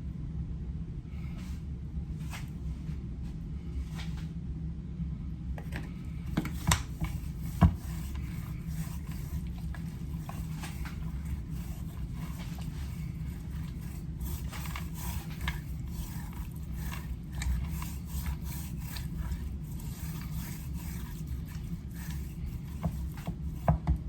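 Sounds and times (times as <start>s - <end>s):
steady low hum: 0.0s - 24.0s
hands rubbing seasoning into meat: 7.3s - 23.7s.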